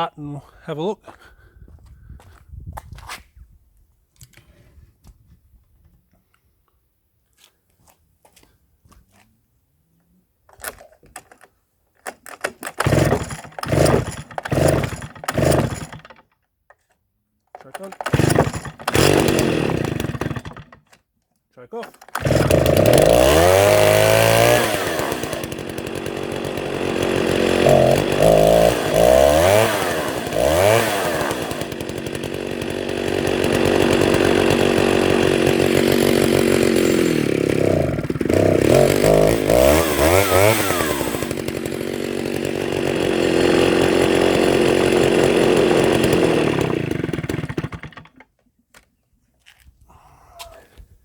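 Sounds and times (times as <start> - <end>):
chainsaw revving: 12.3 - 16.2, 17.6 - 20.8, 21.8 - 48.3.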